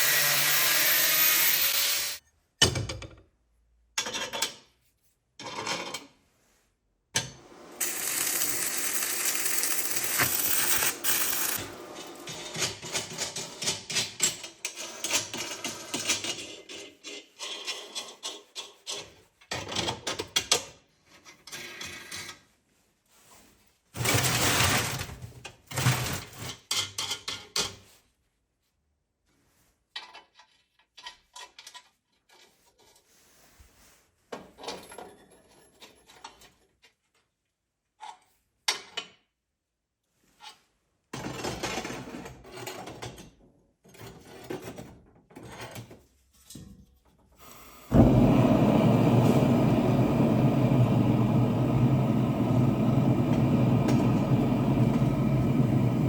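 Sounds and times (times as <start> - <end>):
metal parts rattling and scraping: 7.8 - 18.7.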